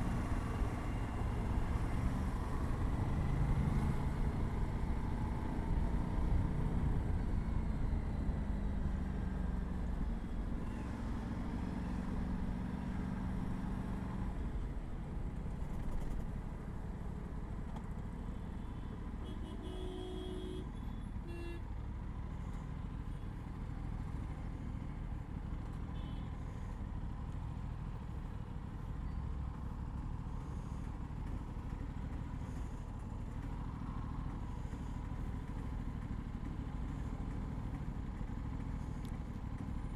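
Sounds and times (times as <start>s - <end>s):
horn tooting: 19.2s - 21.7s.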